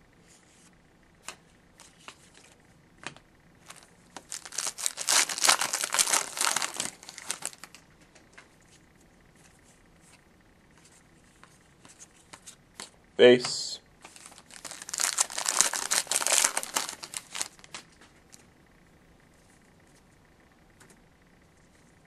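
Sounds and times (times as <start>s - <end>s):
foil wrapper tearing and crinkling: 3.6s - 7.8s, 14.1s - 17.9s.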